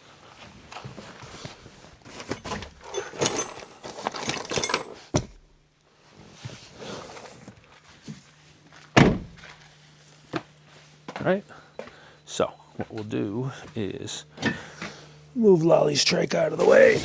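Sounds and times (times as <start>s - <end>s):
metal equipment clinking and rattling: 2.2s - 5.2s.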